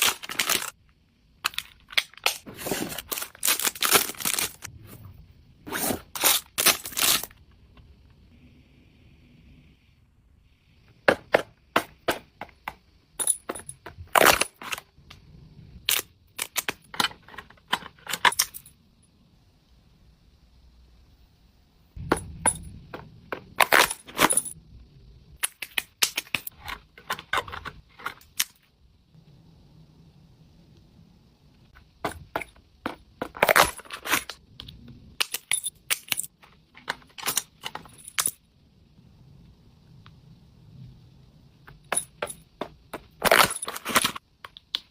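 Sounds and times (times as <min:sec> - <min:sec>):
unboxing clicks and crackles: 0:00.0 - 0:00.8, 0:01.4 - 0:04.7, 0:41.7 - 0:44.9.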